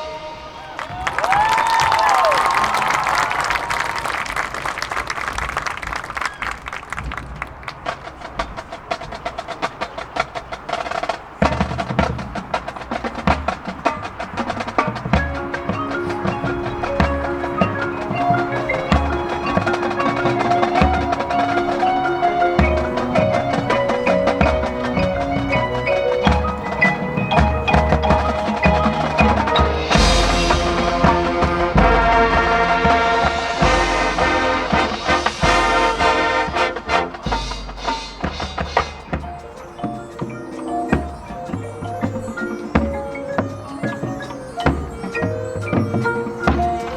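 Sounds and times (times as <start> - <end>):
rapid snare drum strokes: 7.1 - 46.9
mallet percussion passage: 10.7 - 46.9.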